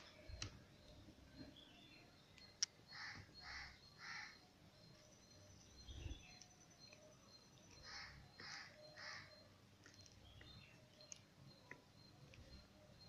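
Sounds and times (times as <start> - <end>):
bird calling: 2.9 - 4.4, 7.7 - 9.5.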